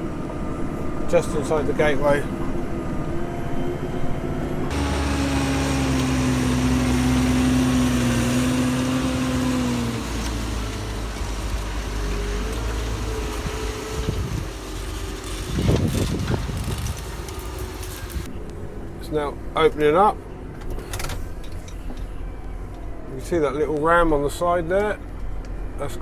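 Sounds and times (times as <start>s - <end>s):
tractor engine under load: 4.5s - 18.4s.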